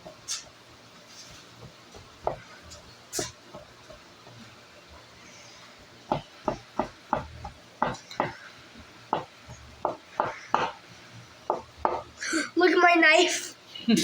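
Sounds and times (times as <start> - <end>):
hand tool knocking on hard block: 6.1 - 8.4, 9.1 - 10.8, 11.5 - 12.1.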